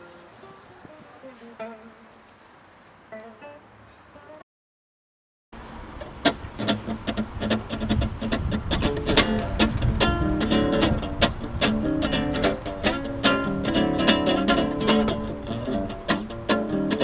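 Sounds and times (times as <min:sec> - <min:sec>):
acoustic guitar strumming: 0:06.0 - 0:17.0.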